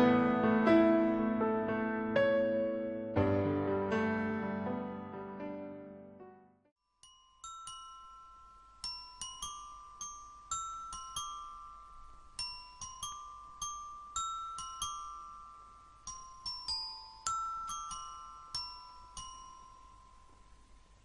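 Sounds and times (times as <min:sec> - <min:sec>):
bell-like glockenspiel melody: 0:06.8 - 0:21.0.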